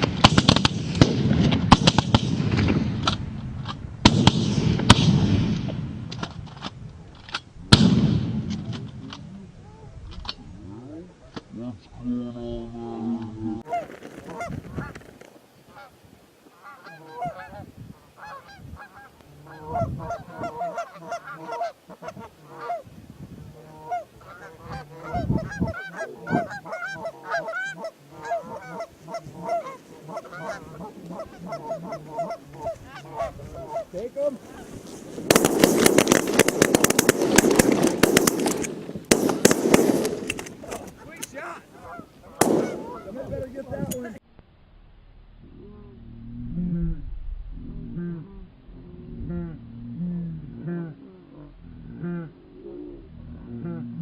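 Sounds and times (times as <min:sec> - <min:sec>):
geese honking: 0:13.5 - 0:15.1, 0:16.5 - 0:22.9, 0:23.6 - 0:38.6, 0:40.6 - 0:43.8.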